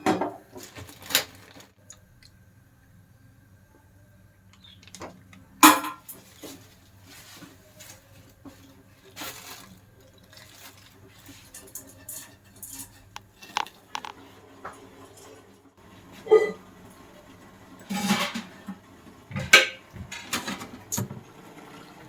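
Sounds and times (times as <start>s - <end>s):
utensils and pots clinking: 5.6s - 8.0s, 8.6s - 15.4s, 16.0s - 21.2s.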